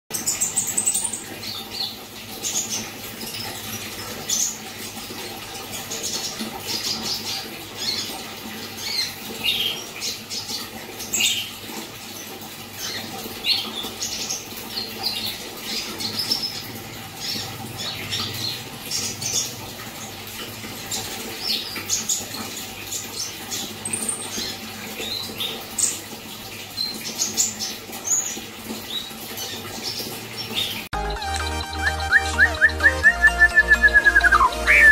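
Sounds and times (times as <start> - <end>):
songbird singing: 31.5 - 34.9.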